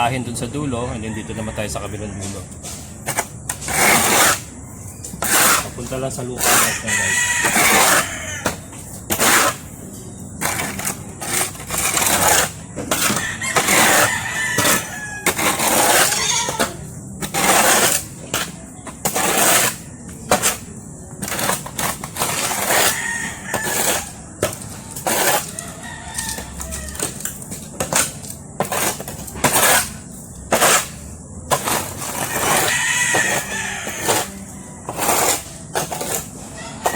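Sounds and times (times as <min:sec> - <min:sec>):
faint rooster crowing: 0:00.9 - 0:02.7, 0:06.4 - 0:08.6, 0:13.0 - 0:16.9, 0:22.4 - 0:27.4, 0:32.2 - 0:36.9
shovel scraping floor: 0:02.2 - 0:09.8, 0:10.4 - 0:36.9
chickens clucking: 0:05.7 - 0:08.5.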